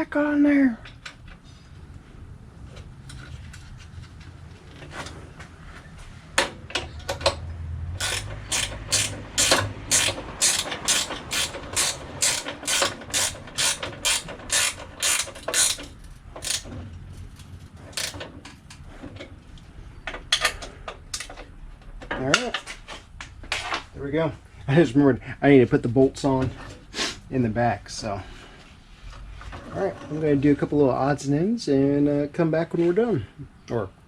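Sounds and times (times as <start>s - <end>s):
ratchet wrench clicking: 8.0s - 16.7s, 17.4s - 18.2s.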